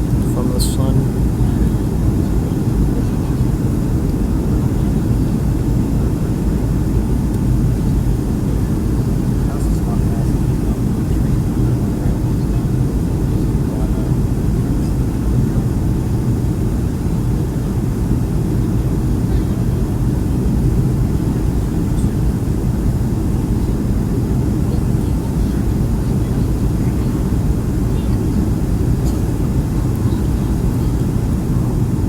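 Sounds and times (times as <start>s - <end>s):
airplane cabin engine noise: 0.0s - 32.0s.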